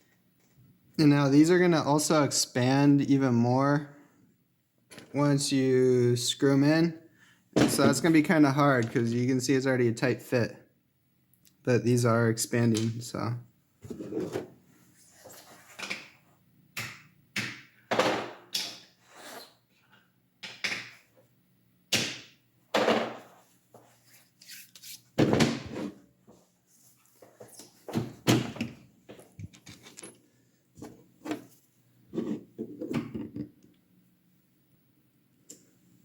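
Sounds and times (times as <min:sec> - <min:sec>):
faint steady hum: 0:00.0 - 0:36.0
plastic parts knocking and scraping: 0:27.9 - 0:30.2.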